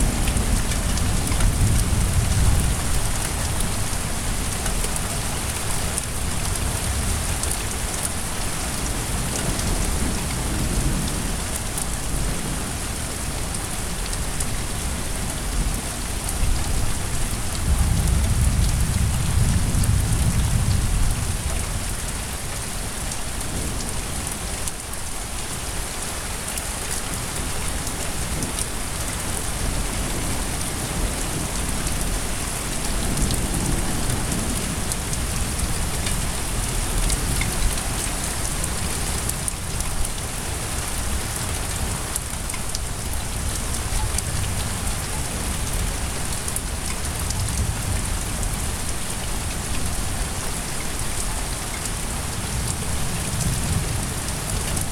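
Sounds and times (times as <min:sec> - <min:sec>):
low rumble of thunder: 0:00.0 - 0:07.9, 0:15.2 - 0:22.4, 0:29.2 - 0:49.0
heavy rain pouring: 0:00.0 - 0:54.9.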